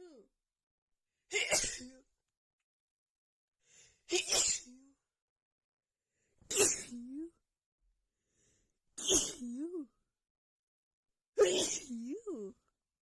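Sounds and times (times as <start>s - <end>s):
woman sneezing: 4.1s - 4.6s, 6.5s - 7.0s, 9.0s - 9.5s, 11.4s - 12.0s.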